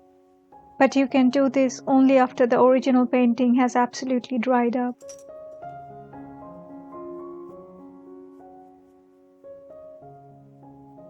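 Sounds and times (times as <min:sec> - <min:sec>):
soft piano music: 0:00.0 - 0:11.0.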